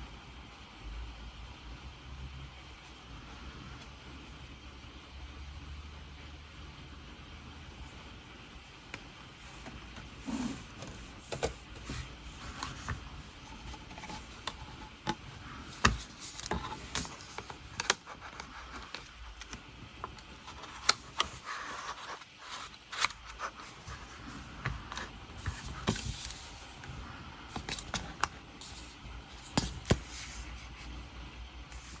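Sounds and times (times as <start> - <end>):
card and plastic rustling: 9.4 - 30.6.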